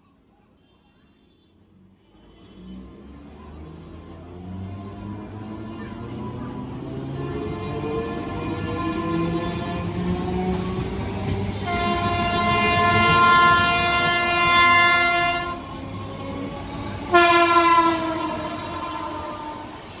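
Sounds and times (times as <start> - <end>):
running train rumble: 2.8 - 20.0
train horn blasts: 8.2 - 10.1, 11.6 - 15.8, 17.1 - 20.0.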